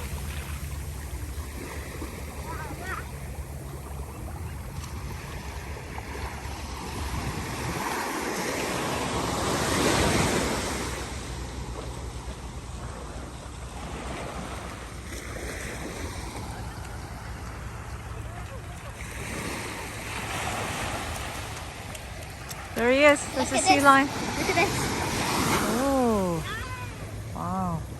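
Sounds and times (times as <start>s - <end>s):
ocean waves breaking: 0.0s - 27.9s
wind rumble on microphone: 0.0s - 27.9s.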